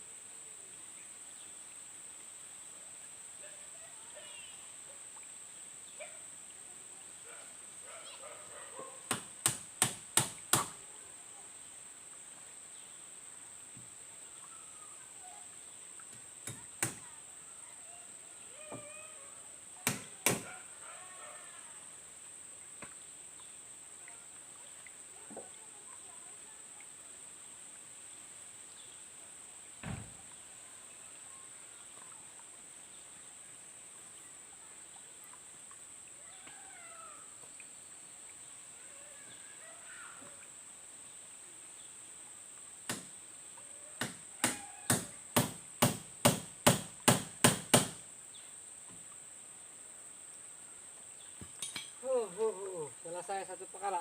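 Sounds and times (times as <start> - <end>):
hammer blows on wood: 44.0 - 48.0.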